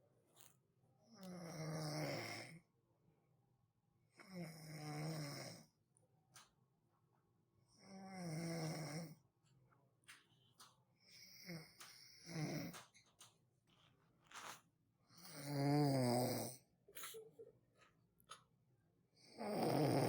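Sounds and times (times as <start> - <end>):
person snoring: 1.2 - 2.6, 15.2 - 16.6, 19.2 - 20.0.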